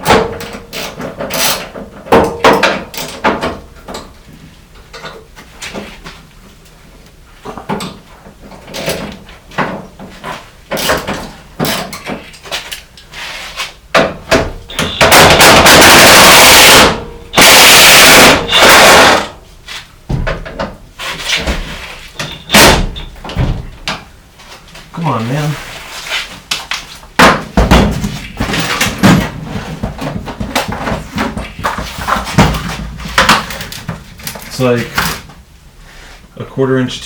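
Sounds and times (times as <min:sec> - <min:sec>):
loud hissing bursts: 0:14.8 - 0:19.3.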